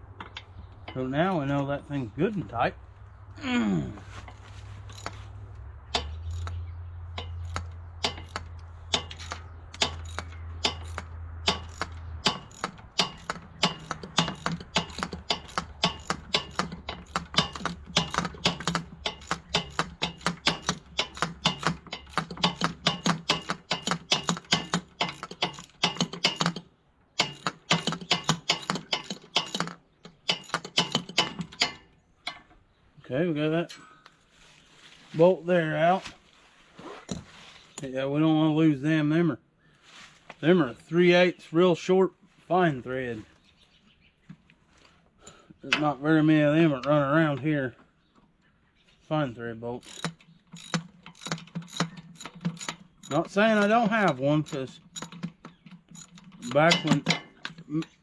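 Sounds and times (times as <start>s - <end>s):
socket ratchet wrench clicking: 5.9s - 6.6s, 7.2s - 26.6s, 27.2s - 32.4s, 49.8s - 57.6s.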